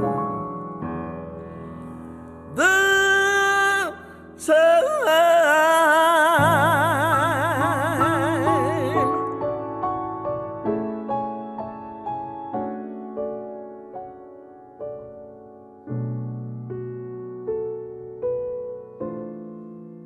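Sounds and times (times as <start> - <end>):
piano chords: 0.0 - 20.0
woman singing jazz ballad: 2.5 - 9.4.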